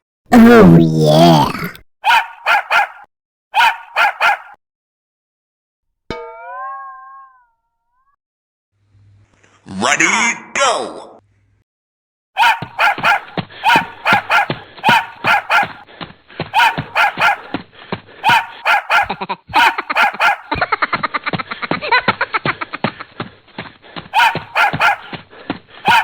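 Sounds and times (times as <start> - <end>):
dog barking: 2.0 - 4.6, 12.4 - 15.9, 16.5 - 17.6, 18.2 - 20.6, 24.1 - 25.2.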